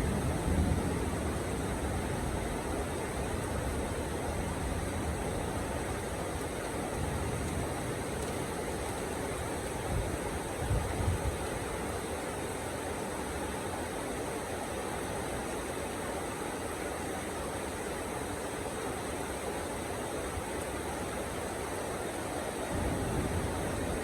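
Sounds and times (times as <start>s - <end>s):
heavy rain: 0.0s - 24.0s.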